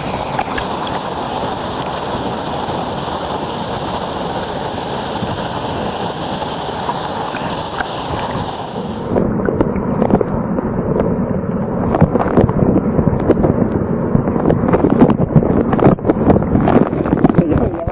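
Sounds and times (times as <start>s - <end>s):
waterfall rushing: 0.0s - 10.1s.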